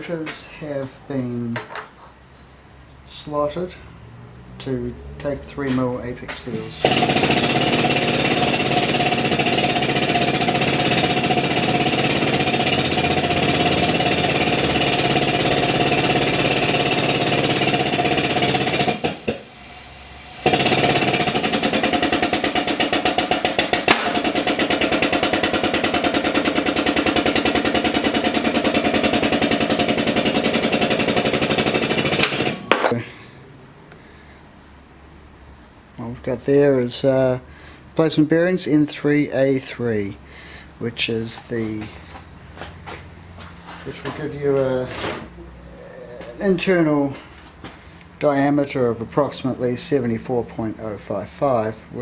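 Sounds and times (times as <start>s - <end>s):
power tool rattling: 6.4s - 33.0s.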